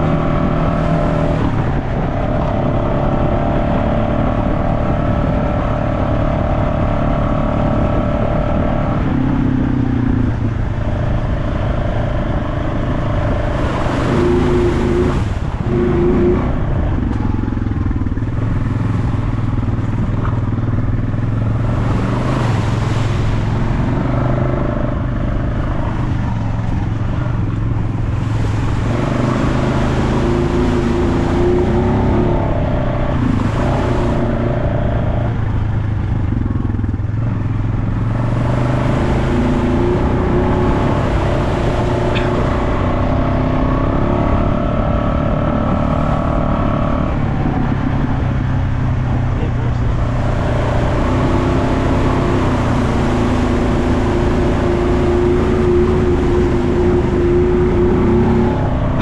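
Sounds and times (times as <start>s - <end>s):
off-road vehicle engine running: 0.0s - 59.0s
rushing noise: 10.4s - 36.4s.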